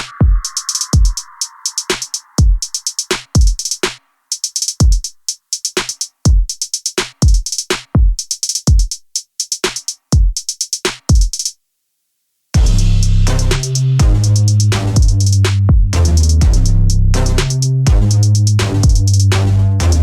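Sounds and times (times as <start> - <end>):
electronic music with drum-machine beat: 0.0 - 6.0, 12.6 - 20.0.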